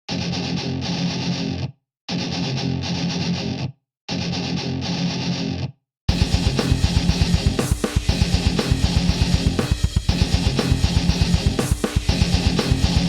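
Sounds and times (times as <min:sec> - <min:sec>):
distorted electric guitar chords: 0:00.1 - 0:13.0
fast rock drum beat: 0:06.1 - 0:13.0.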